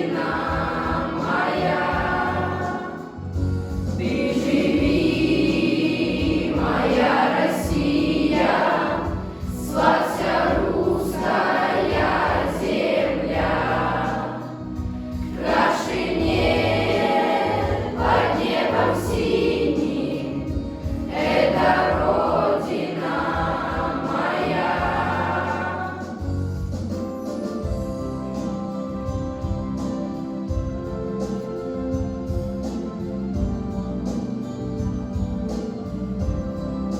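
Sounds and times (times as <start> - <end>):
children's choir singing in unison: 0.0 - 26.4
instrumental backing track: 0.0 - 36.9.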